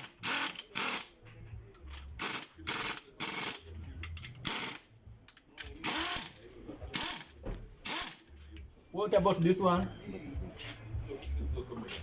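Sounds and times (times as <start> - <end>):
ratchet wrench clicking: 0.0 - 1.2, 1.8 - 8.4.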